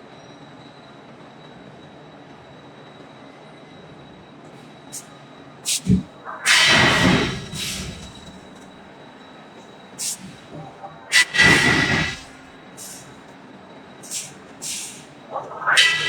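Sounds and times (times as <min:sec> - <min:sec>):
short high hissing bursts: 0:05.7 - 0:08.4, 0:10.0 - 0:13.0, 0:14.0 - 0:16.0.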